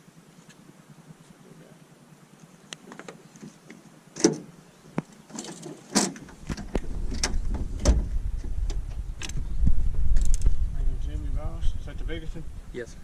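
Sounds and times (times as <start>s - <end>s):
low steady rumble: 6.2s - 13.0s.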